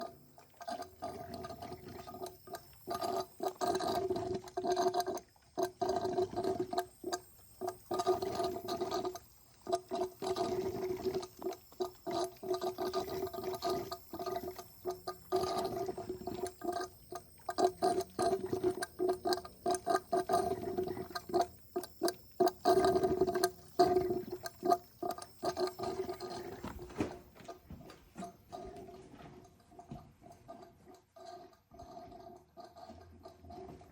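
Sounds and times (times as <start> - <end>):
air bubbling through coolant: 0.0 - 33.9.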